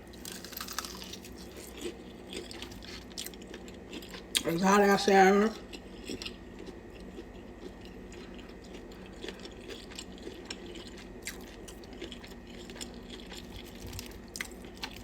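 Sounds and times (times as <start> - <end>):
person chewing food: 0.0 - 4.5, 5.5 - 15.0
faint steady hum: 0.0 - 15.0.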